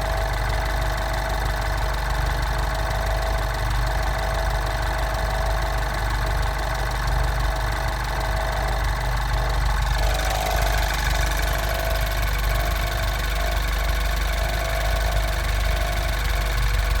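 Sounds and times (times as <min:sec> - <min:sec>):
car engine running: 0:00.0 - 0:17.0
whine over engine: 0:06.8 - 0:17.0.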